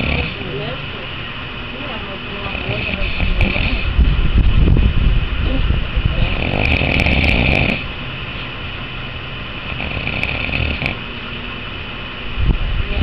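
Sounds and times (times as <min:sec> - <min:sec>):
snoring: 0:00.0 - 0:00.4, 0:02.5 - 0:03.9, 0:06.2 - 0:07.8, 0:09.6 - 0:11.0.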